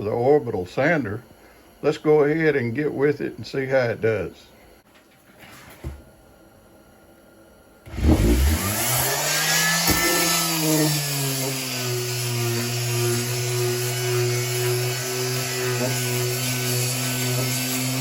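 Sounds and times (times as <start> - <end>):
orbital sander motor hum: 7.9 - 18.0.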